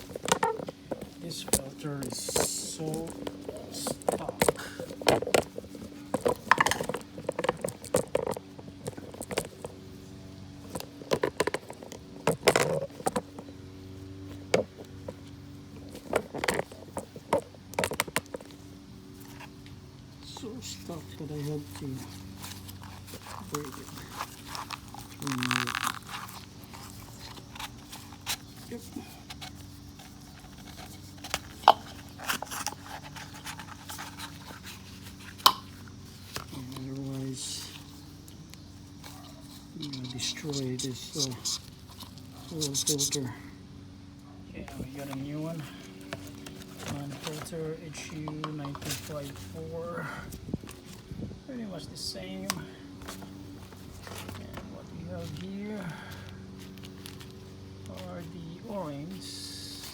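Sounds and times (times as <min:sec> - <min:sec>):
oil filter clicks and scrapes: 0:00.0 - 0:09.9, 0:10.6 - 0:13.5, 0:14.2 - 0:43.2
faint steady hum: 0:00.0 - 0:59.9.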